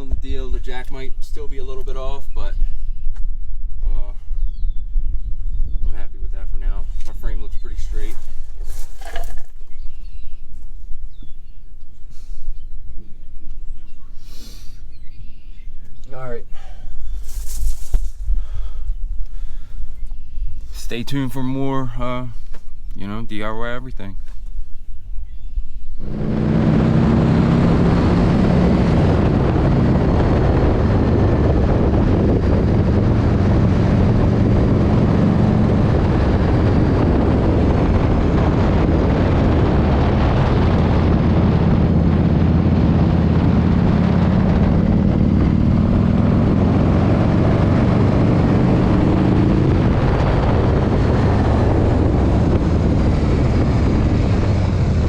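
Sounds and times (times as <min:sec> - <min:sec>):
road and wind rumble: 0:00.0 - 0:55.0
vehicle engine running: 0:26.0 - 0:55.0.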